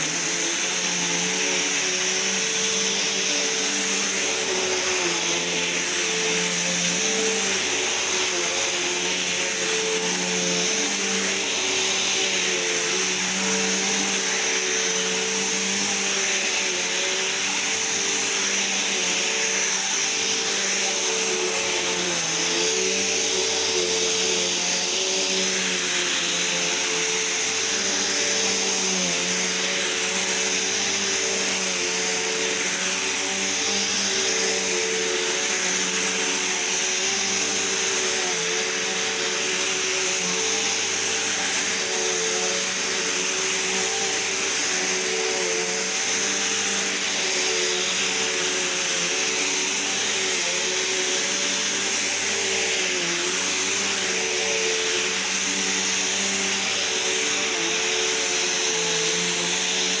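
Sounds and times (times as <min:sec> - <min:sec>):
vacuum cleaner running: 0:00.0 - 1:00.0.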